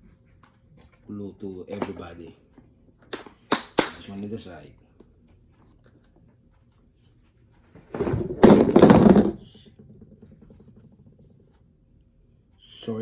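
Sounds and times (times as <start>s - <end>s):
handling noise rustling and knocking: 7.8s - 11.6s.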